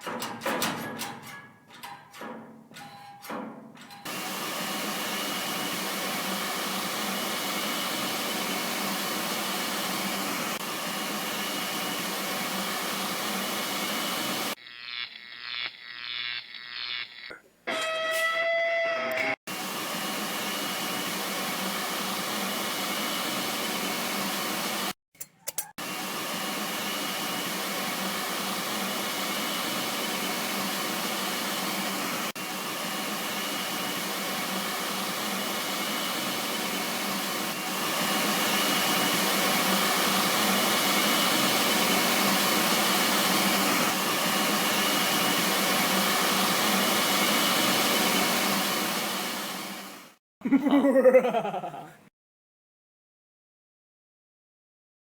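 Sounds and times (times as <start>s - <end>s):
small motor whirring: 14.5s - 17.4s.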